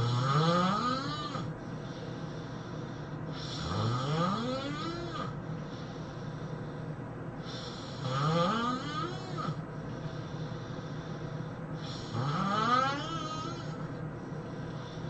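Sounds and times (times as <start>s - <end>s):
person snoring: 0.0s - 1.5s, 3.3s - 5.4s, 7.4s - 9.6s, 11.8s - 14.0s
steady low hum: 0.0s - 15.0s.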